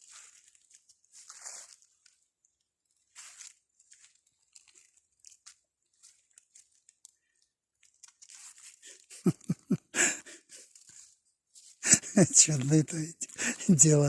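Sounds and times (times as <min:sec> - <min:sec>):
soft crunching and rustling: 0:00.0 - 0:09.6, 0:10.4 - 0:11.8.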